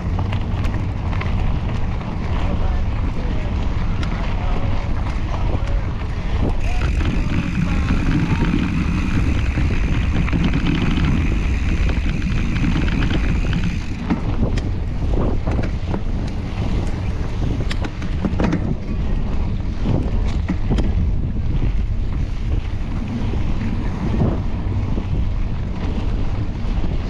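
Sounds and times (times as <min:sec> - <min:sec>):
bike rattling over rough trail: 0:00.0 - 0:27.0
wind buffeting microphone: 0:00.0 - 0:27.0
steady high whine: 0:06.4 - 0:14.2.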